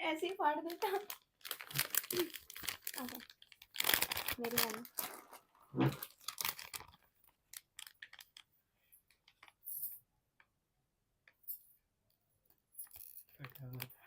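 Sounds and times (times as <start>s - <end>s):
plastic snack packet crackling: 0.6s - 8.5s.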